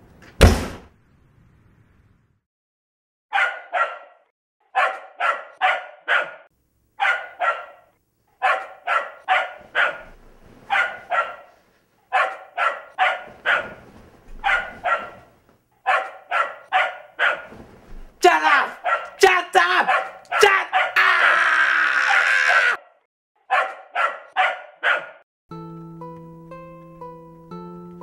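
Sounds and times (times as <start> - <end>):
dog barking: 3.3 - 13.8, 14.4 - 17.5, 18.7 - 19.2, 19.8 - 21.0, 22.8 - 25.2.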